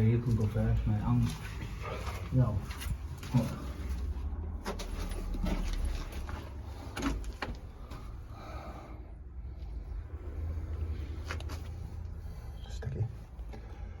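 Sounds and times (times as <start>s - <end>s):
knocks and scrapes: 0.3s - 8.1s
low rumble: 2.8s - 13.5s.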